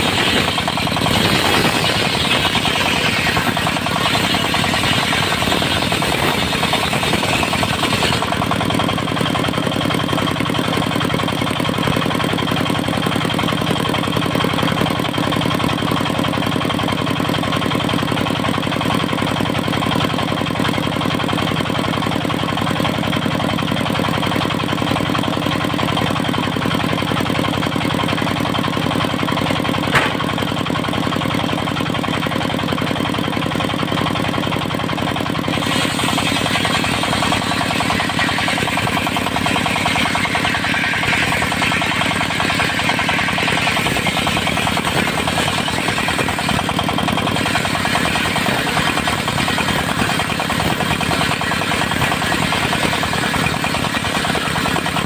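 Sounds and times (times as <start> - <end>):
saw blade cutting wood: 0.0 - 18.1, 29.4 - 55.0
diesel engine running: 0.0 - 55.0.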